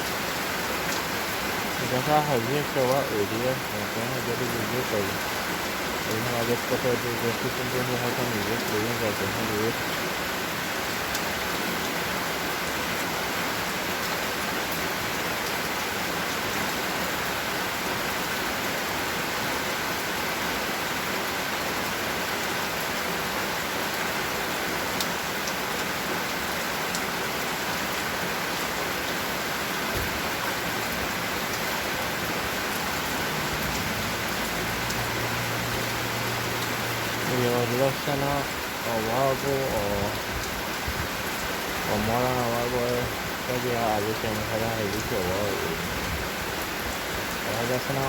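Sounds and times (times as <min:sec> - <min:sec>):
rain pattering: 0:00.0 - 0:48.0
sharp raindrop ticks: 0:06.0 - 0:10.0.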